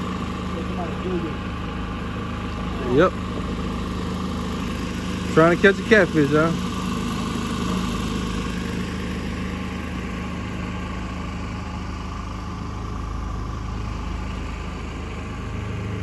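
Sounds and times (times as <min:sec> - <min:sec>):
boat motor running: 0:00.0 - 0:16.0.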